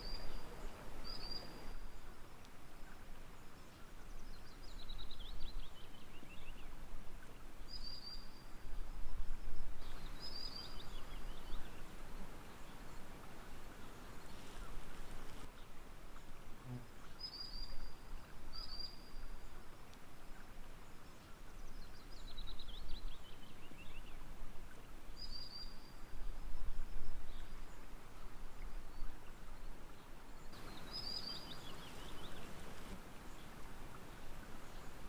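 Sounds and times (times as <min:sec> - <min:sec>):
songbirds whistling: 0:30.6 - 0:32.9
low uneven rumble: 0:30.6 - 0:35.0.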